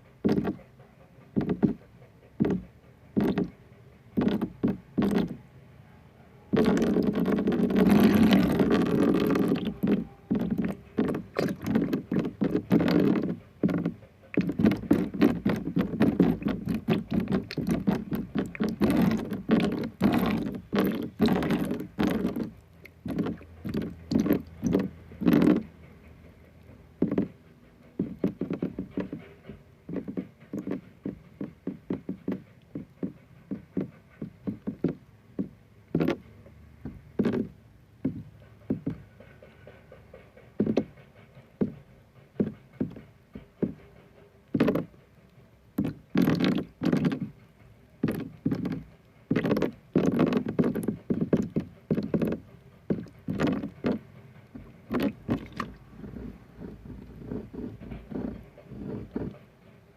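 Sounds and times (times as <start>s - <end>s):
tapping and knocking on objects: 0.2s - 0.7s, 1.4s - 1.8s, 2.4s - 3.6s, 4.2s - 5.4s, 6.6s - 25.7s, 27.0s - 39.8s, 40.5s - 41.0s, 42.4s - 43.9s, 44.5s - 45.0s, 45.8s - 47.4s, 48.0s - 56.2s.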